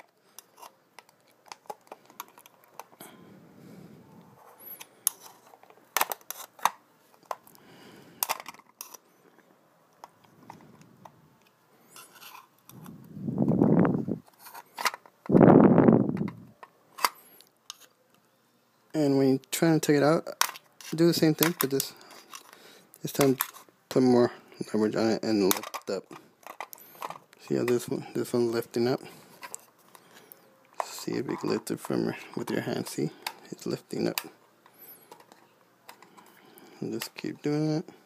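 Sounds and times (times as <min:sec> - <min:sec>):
rushes of air: 0:15.3 - 0:16.5.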